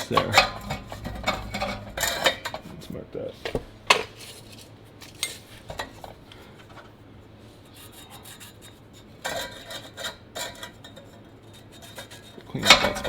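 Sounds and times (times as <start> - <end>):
scraping on steel pipe: 0.2 - 2.8.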